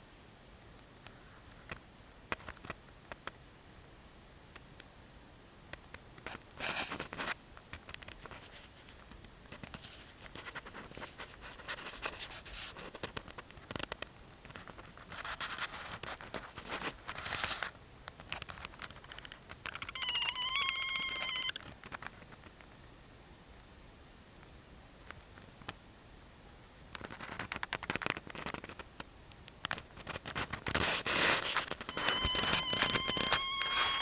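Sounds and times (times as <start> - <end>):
scratching and rustling: 5.8 - 22.8, 26.9 - 34.0
scattered clicks: 12.0 - 15.1, 17.1 - 22.8, 26.9 - 30.8
wavering turkey-style call: 19.8 - 21.7.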